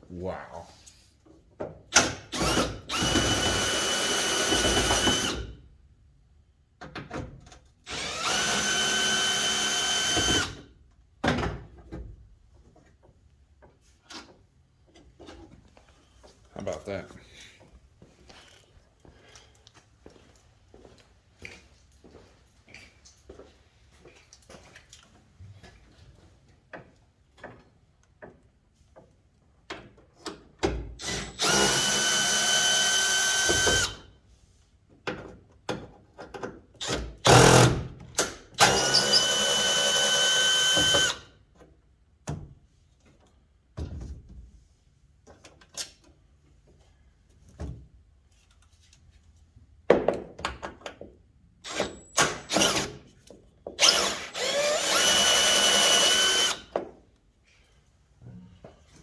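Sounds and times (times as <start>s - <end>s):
power drill running: 2.3s - 5.4s, 7.9s - 10.6s, 31.0s - 34.0s, 36.9s - 37.8s, 38.6s - 41.3s, 51.6s - 53.0s, 53.8s - 56.7s.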